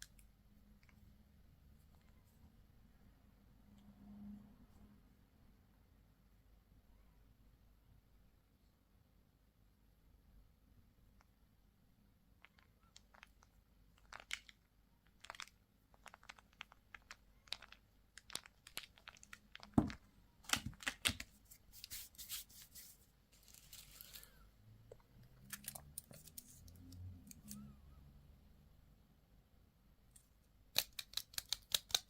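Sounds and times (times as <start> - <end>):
packaging crinkling: 12.4 - 22.4.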